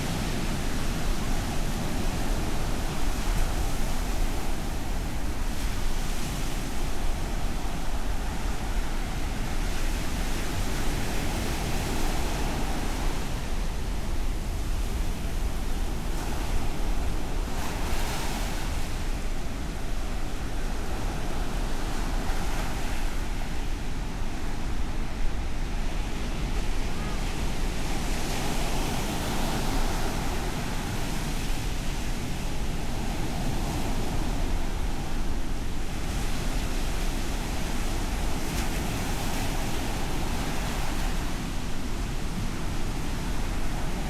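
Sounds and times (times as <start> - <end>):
ocean surf breaking: 26.3 - 44.0.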